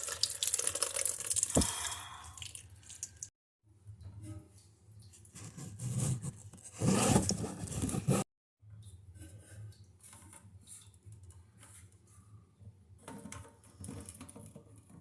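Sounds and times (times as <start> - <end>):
rubbing and scraping of parts: 5.4 - 8.2
soft scratches: 5.4 - 8.2.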